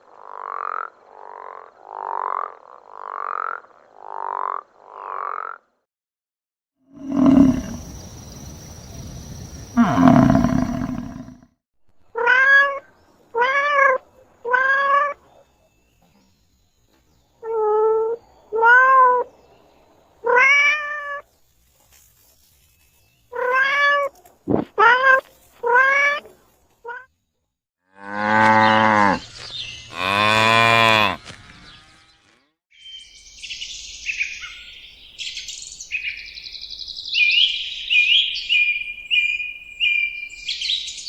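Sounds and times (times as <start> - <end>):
rising and falling animal calls: 7.0 - 8.3, 9.6 - 11.4.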